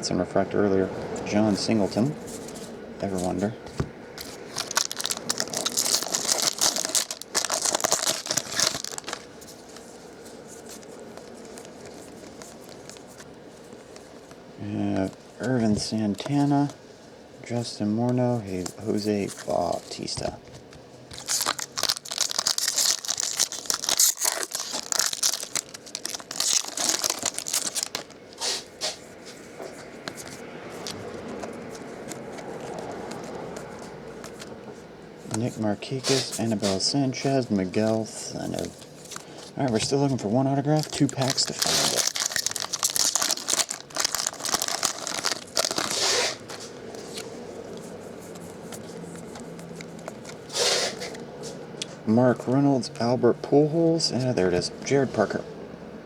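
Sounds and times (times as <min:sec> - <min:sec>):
card pack wrapper tearing and crinkling: 0:04.2 - 0:09.3, 0:21.1 - 0:28.4, 0:36.0 - 0:47.3.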